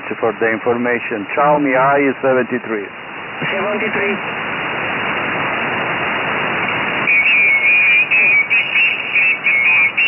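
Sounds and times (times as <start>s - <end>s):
radio receiver hiss: 0.0s - 10.0s
high whistling radio tone: 7.0s - 10.0s.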